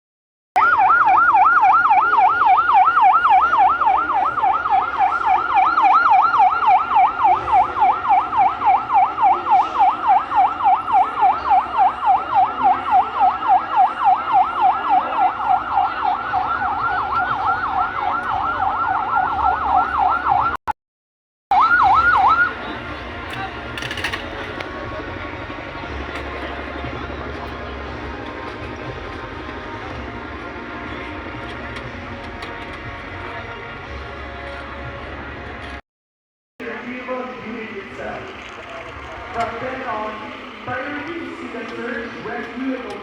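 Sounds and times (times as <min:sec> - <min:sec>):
siren yelping: 0:00.6 - 0:20.6, 0:21.5 - 0:22.6.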